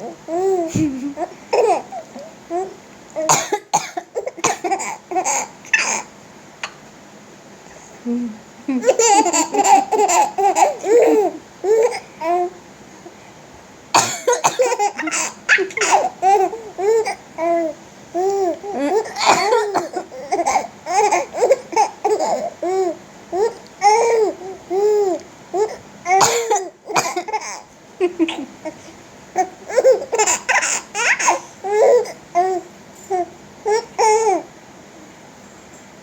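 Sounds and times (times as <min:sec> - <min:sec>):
baby laughing: 0:00.3 - 0:03.4, 0:04.1 - 0:06.8, 0:08.8 - 0:12.5, 0:14.0 - 0:28.8, 0:29.4 - 0:34.4
baby coughing: 0:01.1 - 0:01.9, 0:03.2 - 0:06.8, 0:08.8 - 0:12.4, 0:14.0 - 0:17.6, 0:18.3 - 0:22.8, 0:25.6 - 0:27.7, 0:29.4 - 0:32.6.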